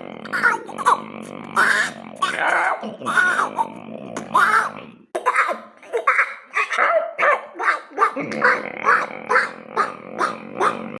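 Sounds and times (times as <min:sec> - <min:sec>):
man imitating clucking hens: 0:08.0 - 0:11.0.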